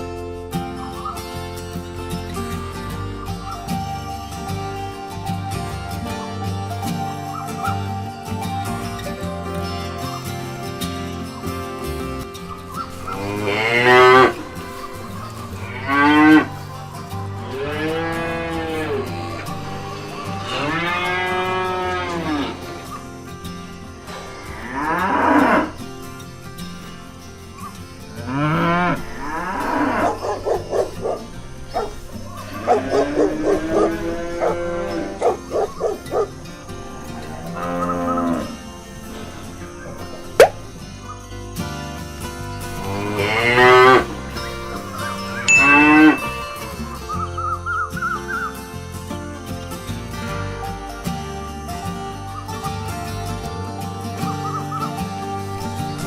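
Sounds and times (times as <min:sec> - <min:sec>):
background music: 0:00.0 - 0:56.0
cow mooing: 0:13.0 - 0:23.0, 0:24.2 - 0:25.8, 0:28.2 - 0:40.0, 0:42.8 - 0:44.4, 0:45.1 - 0:46.8.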